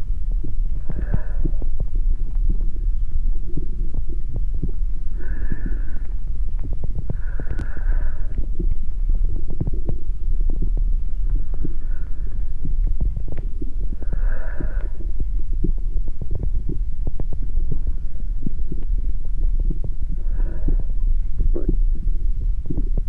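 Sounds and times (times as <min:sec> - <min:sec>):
deep heart throbbing: 0:00.0 - 0:23.0
irregular crackles and knocks: 0:05.4 - 0:20.8.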